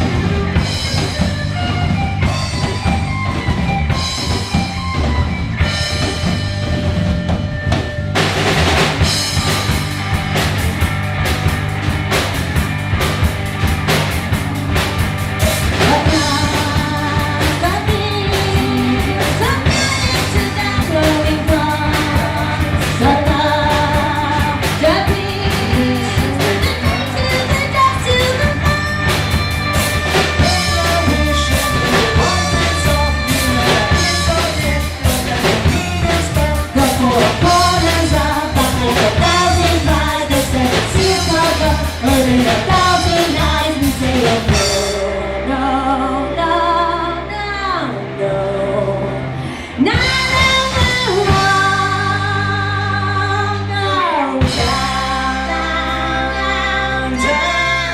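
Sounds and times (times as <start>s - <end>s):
bass guitar: 0.0s - 57.9s
drums: 0.0s - 57.9s
electric guitar: 0.0s - 57.9s
person singing: 15.6s - 57.9s.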